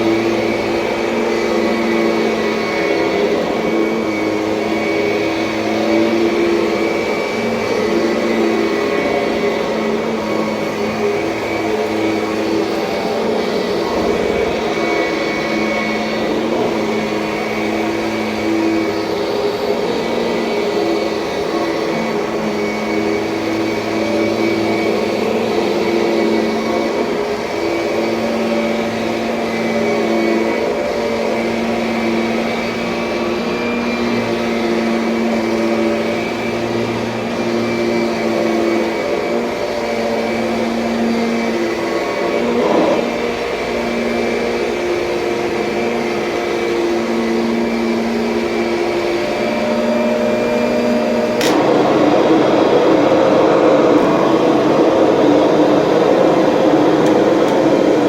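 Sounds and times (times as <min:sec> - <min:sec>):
upright vacuum cleaner motor hum: 0:00.0 - 0:58.0
click: 0:51.4 - 0:51.7, 0:57.0 - 0:57.7.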